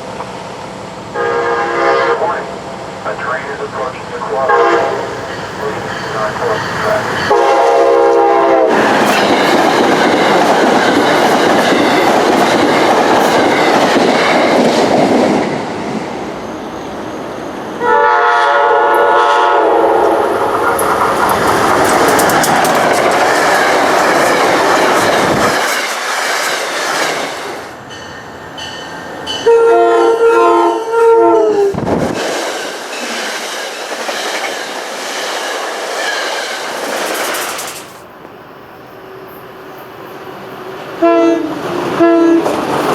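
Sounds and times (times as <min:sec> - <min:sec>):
train air horn chime: 0:04.4 - 0:08.7, 0:28.0 - 0:31.6
train wheels clattering on rails: 0:05.0 - 0:07.9, 0:08.5 - 0:15.8, 0:20.4 - 0:29.5, 0:31.8 - 0:38.0, 0:41.5 - 0:42.9.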